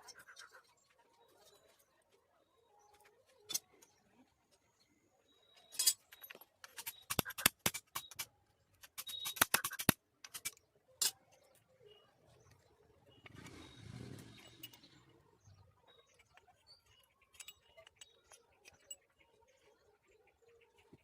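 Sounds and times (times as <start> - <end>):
metal tools clinking: 5.6 - 8.2.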